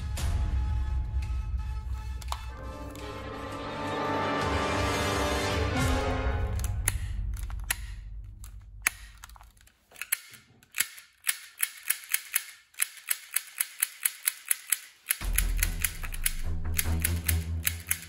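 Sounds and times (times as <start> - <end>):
background music: 0.0 - 10.1, 15.2 - 18.0
toy pistol clicking: 6.5 - 18.0.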